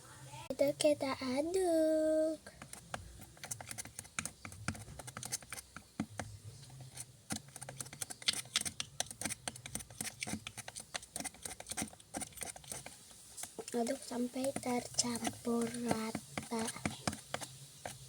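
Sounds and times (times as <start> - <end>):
stirrer tapping container: 2.5 - 18.0.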